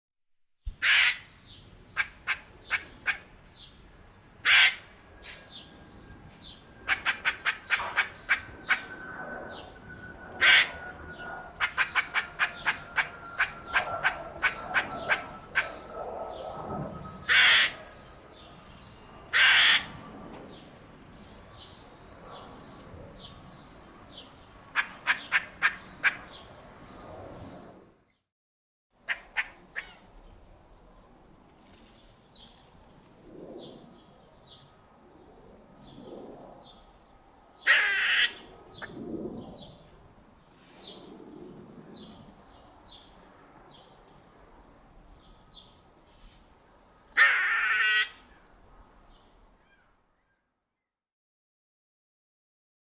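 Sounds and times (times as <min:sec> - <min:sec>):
squirrel squawks: 0:00.8 - 0:01.3, 0:04.4 - 0:04.9, 0:10.4 - 0:10.8, 0:11.6 - 0:15.8, 0:17.2 - 0:17.8, 0:29.1 - 0:30.0, 0:47.2 - 0:48.2
squirrel alarm clucks: 0:11.6 - 0:15.8.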